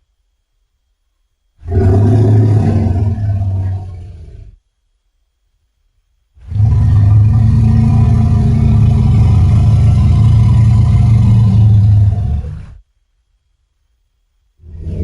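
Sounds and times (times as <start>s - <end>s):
low rumbling creature call: 1.6s - 4.6s, 6.4s - 12.9s, 14.6s - 15.0s.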